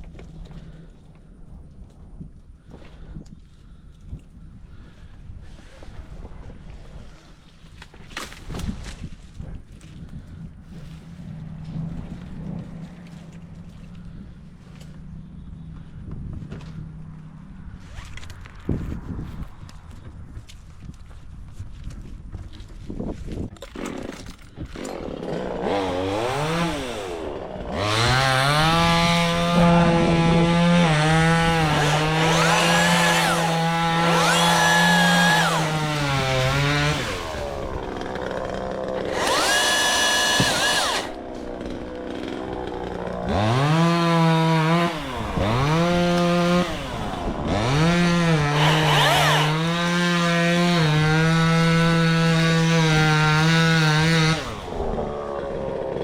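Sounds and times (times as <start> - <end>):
chainsaw revving and cutting: 23.6 - 56.0.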